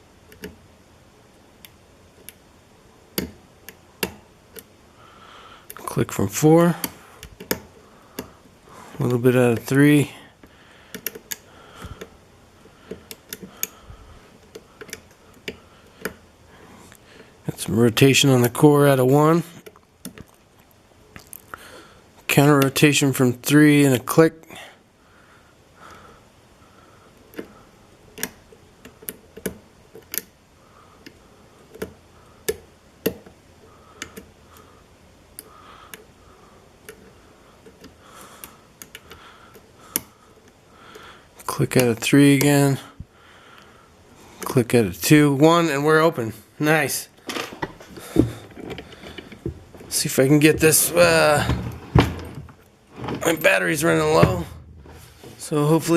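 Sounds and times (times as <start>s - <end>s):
lock pick clicking pins: 0.3s - 0.6s, 6.8s - 8.3s, 10.9s - 12.1s, 12.9s - 13.8s, 14.4s - 16.2s, 28.2s - 30.4s, 31.0s - 33.4s, 34.0s - 34.7s, 36.8s - 41.0s.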